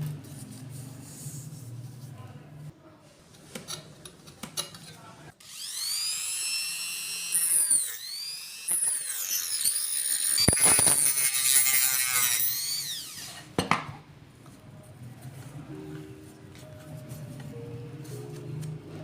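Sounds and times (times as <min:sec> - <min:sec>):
angle grinder whining: 0:05.4 - 0:13.5.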